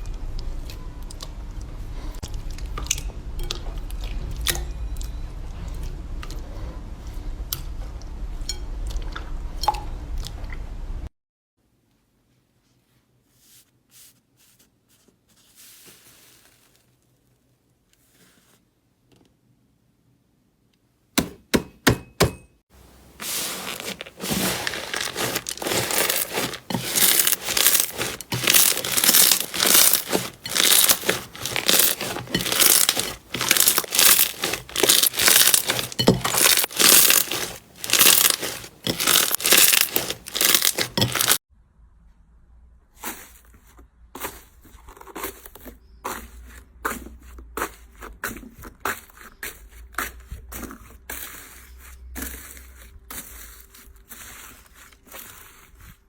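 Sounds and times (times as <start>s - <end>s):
slime crackling and popping: 23.3s - 41.4s.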